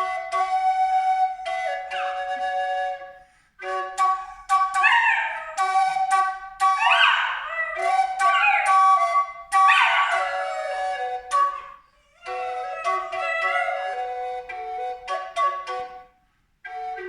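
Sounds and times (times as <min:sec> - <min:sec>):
wind instrument held notes: 0:00.0 - 0:16.1, 0:16.7 - 0:17.0
dog howling: 0:01.8 - 0:02.4, 0:04.7 - 0:15.0.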